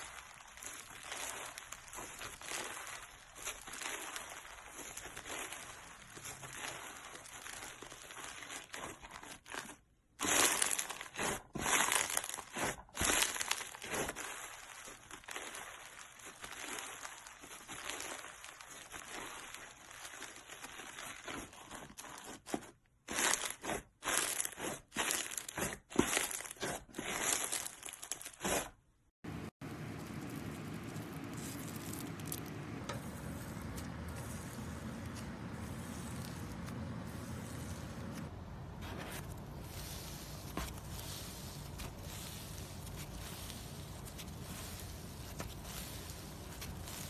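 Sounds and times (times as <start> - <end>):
slime crackling when squeezed: 0.0 - 9.4, 10.2 - 21.7, 29.9 - 32.6.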